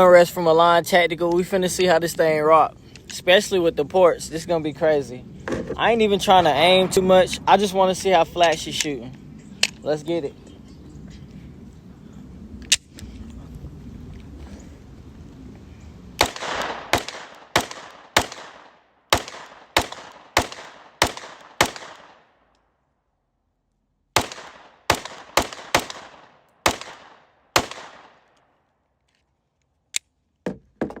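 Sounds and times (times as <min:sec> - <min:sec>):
pistol shots: 0:16.2 - 0:22.3, 0:24.2 - 0:28.3.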